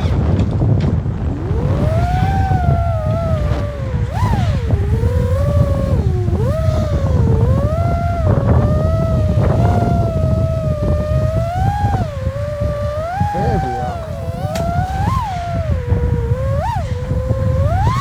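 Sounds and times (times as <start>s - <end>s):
quadcopter motors whining: 0.0s - 18.0s
wind and prop wash rumble: 0.0s - 18.0s.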